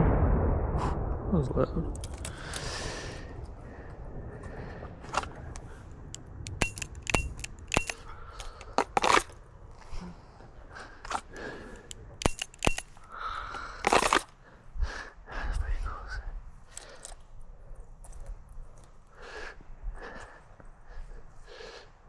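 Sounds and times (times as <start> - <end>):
revolver metallic clicks: 6.2 - 8.0, 11.9 - 13.0.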